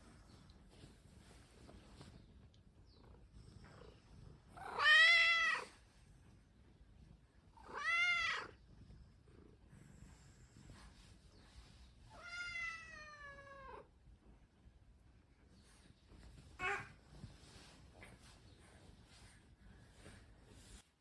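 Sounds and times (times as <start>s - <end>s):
cat meowing: 4.6s - 5.7s, 7.6s - 8.5s, 12.1s - 13.9s.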